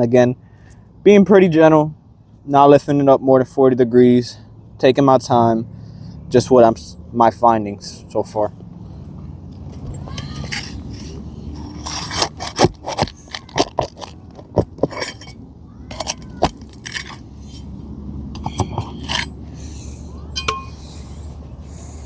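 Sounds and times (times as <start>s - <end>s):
metal tool scraping roof shingles: 9.9s - 17.7s, 18.4s - 19.4s.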